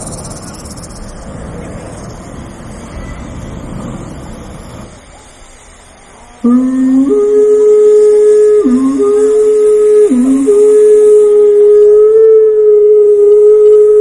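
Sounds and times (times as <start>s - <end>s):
traffic: 0.0s - 6.5s
loud held musical tone: 0.0s - 14.0s
voices: 0.0s - 14.0s.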